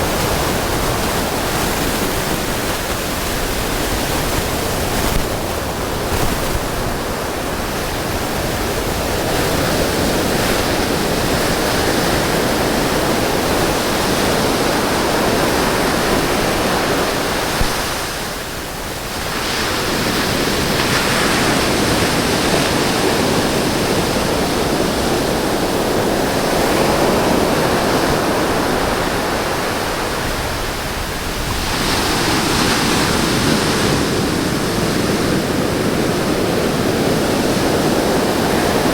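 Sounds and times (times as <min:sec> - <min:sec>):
waves breaking on a beach: 0:00.0 - 0:38.9.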